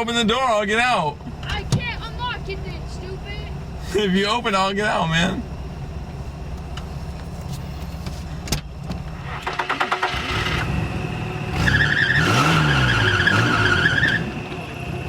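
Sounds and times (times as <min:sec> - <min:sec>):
car engine running: 0:00.0 - 0:15.0
loud high squeal: 0:11.6 - 0:14.4.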